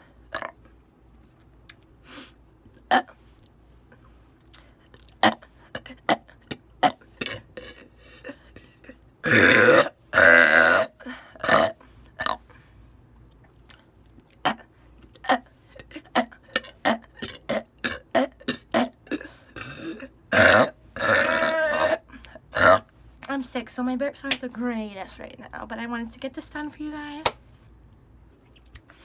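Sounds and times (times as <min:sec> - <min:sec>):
woman belching: 0:06.8 - 0:12.4, 0:15.2 - 0:22.8
sharp mouth clicks: 0:28.4 - 0:28.9.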